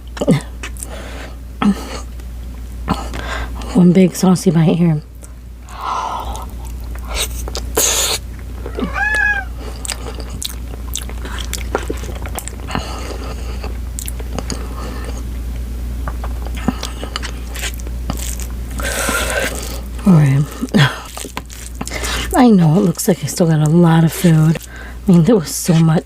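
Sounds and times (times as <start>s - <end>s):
cat meowing: 8.7s - 9.6s
person chewing with wet mouth smacks: 9.7s - 15.3s, 16.2s - 19.9s, 20.5s - 22.3s.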